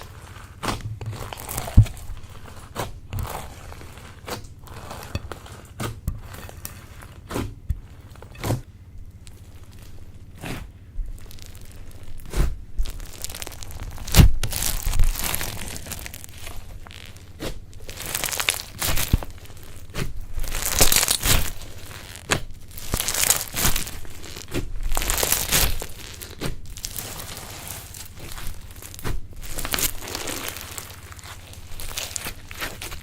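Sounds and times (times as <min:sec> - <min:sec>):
slime squeezed by hand: 0:09.2 - 0:33.0.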